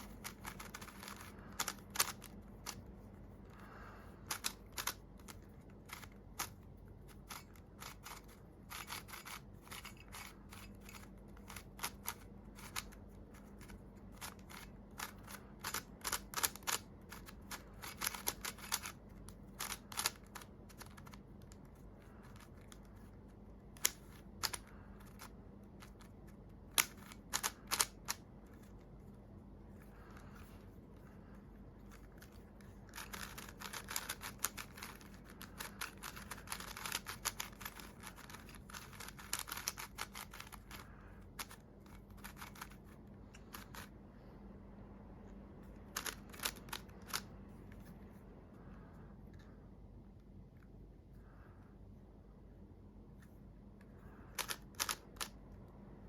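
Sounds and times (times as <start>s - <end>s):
speed cube clacking: 0.0s - 29.1s, 31.7s - 44.0s, 45.8s - 47.3s, 54.3s - 55.4s.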